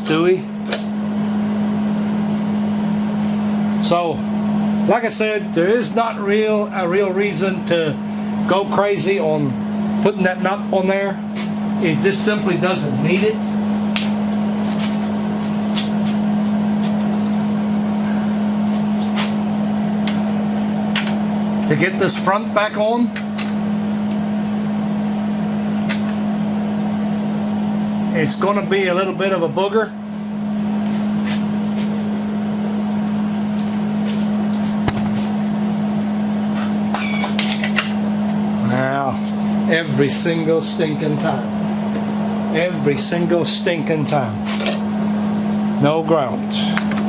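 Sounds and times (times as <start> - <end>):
low machine hum: 0.0 - 47.0.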